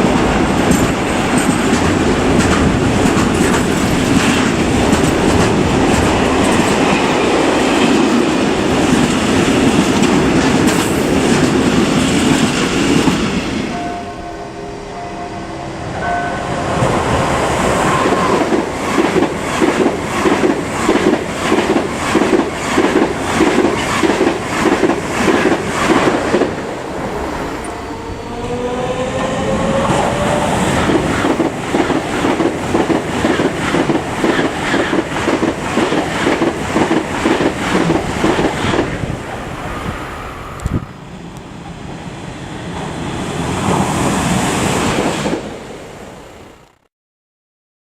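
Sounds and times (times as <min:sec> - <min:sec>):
train wheels clacking on rails: 0:00.0 - 0:15.0, 0:16.6 - 0:39.1
rush of noise: 0:00.0 - 0:35.7, 0:36.6 - 0:46.7
upward gliding tone: 0:13.6 - 0:18.8, 0:26.0 - 0:31.2.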